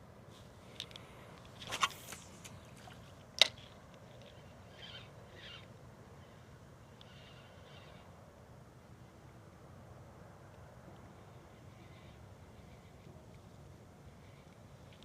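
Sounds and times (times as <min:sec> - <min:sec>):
faint bird calls: 0:04.1 - 0:08.4, 0:11.2 - 0:13.3.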